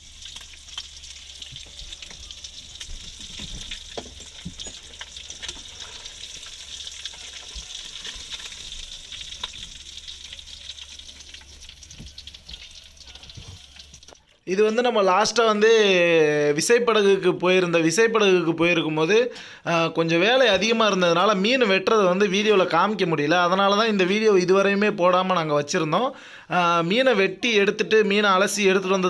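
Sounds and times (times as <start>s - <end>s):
fish frying in hot oil: 0.0s - 14.2s.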